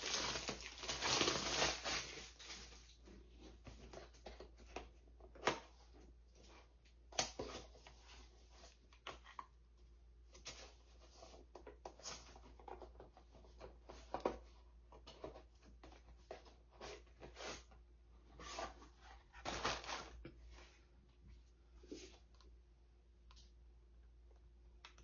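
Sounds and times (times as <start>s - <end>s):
packaging rustling: 0.0s - 3.0s.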